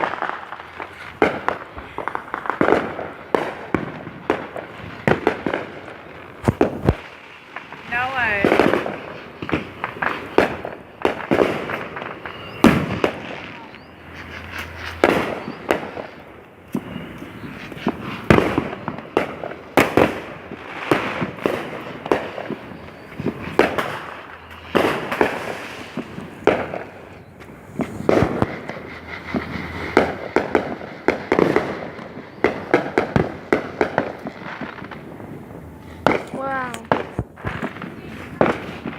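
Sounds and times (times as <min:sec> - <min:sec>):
fireworks bangs and pops: 0:00.0 - 0:38.9.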